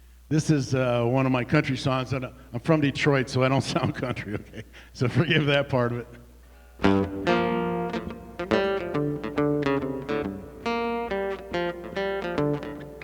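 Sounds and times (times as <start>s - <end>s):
acoustic guitar picking: 6.6s - 13.0s.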